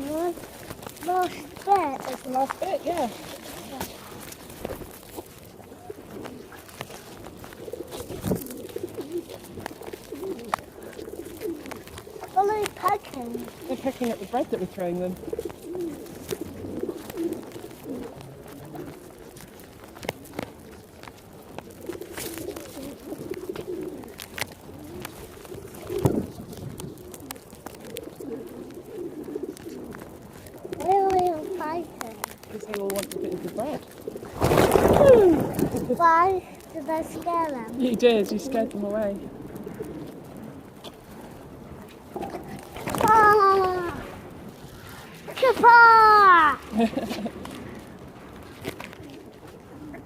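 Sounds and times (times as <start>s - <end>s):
pigeons cooing: 0.0s - 50.0s.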